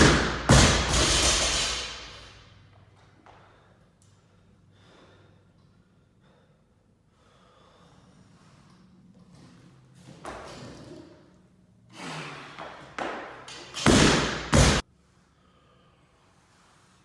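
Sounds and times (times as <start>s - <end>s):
barbell crashing onto platform: 0.0s - 2.2s, 13.8s - 14.8s.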